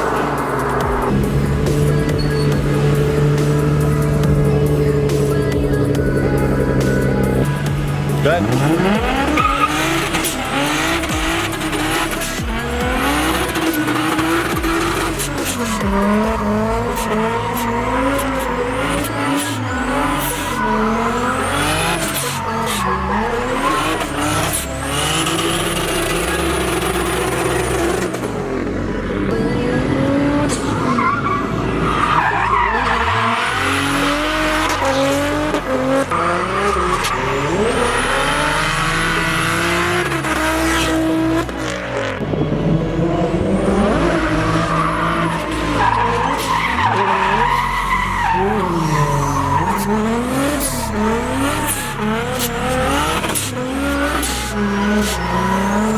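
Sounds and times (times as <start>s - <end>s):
tyres squealing: 0.0s - 28.4s, 43.2s - 55.9s
car engine revving: 0.0s - 55.9s.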